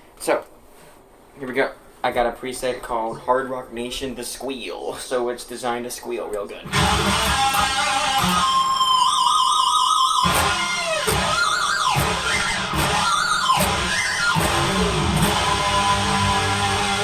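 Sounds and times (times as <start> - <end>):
electric guitar squealing: 6.6 - 17.0.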